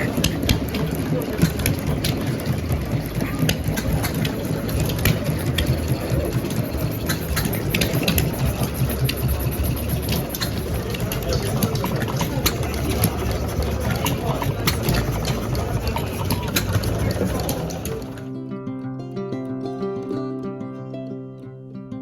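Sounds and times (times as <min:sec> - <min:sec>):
sharp mechanical clicks: 0:00.0 - 0:18.2
engine rumbling: 0:00.0 - 0:18.3.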